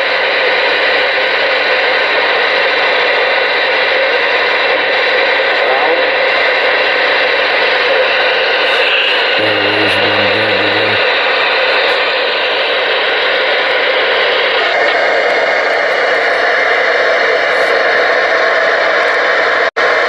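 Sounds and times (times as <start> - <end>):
radio static hiss: 8.6 - 11.0.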